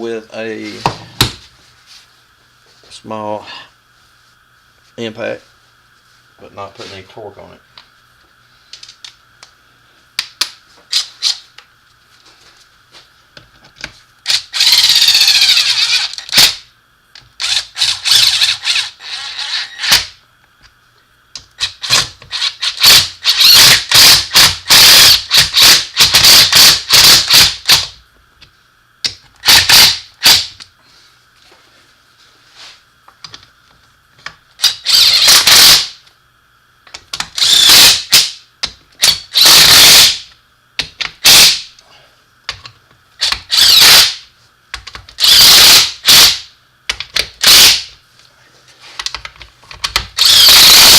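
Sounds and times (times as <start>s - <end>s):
impact wrench running bolts: 14.3s - 16.6s, 17.4s - 20.2s, 21.6s - 28.0s, 29.4s - 30.6s, 34.6s - 36.0s, 37.1s - 41.7s, 43.2s - 44.2s, 45.2s - 47.9s, 49.8s - 50.9s.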